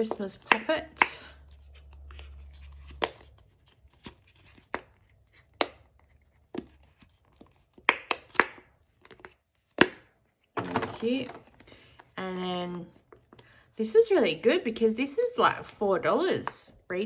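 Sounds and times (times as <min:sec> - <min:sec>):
toys and packaging taps and clicks: 0:00.0 - 0:13.5.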